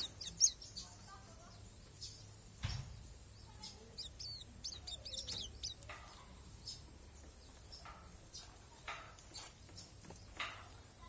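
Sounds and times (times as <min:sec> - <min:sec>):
low steady hum: 0:00.0 - 0:08.3
bird chirping faintly: 0:00.0 - 0:11.0.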